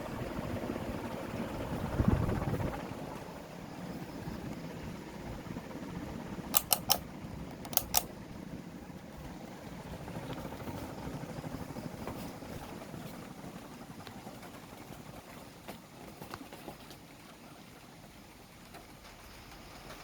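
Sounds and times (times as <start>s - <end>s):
ceiling fan whirring: 0.0s - 13.9s.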